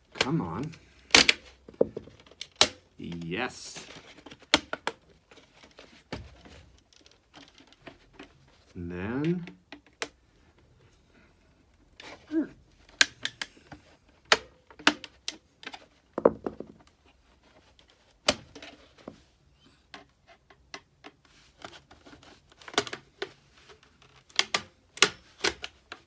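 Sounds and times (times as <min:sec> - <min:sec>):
plastic casing being pried apart: 0:00.1 - 0:03.0, 0:03.9 - 0:08.4, 0:14.2 - 0:17.0, 0:20.0 - 0:26.0.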